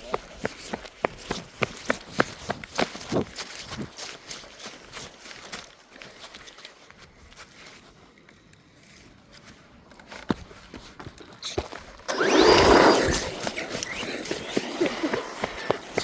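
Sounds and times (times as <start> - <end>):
tyre noise: 9.8 - 16.0
rc car motor whining: 12.0 - 16.0.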